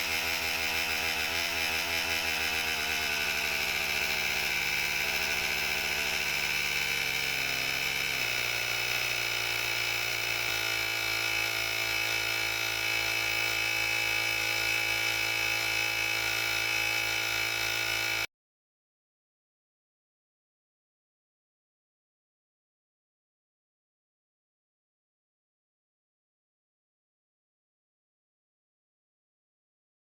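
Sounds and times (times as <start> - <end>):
tire inflator compressor whirring: 0.0 - 18.3.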